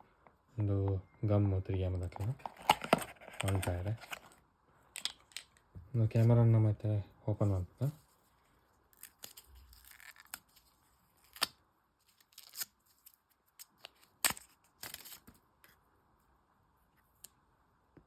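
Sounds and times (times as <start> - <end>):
plastic packaging clicks and snaps: 13.6 - 15.2.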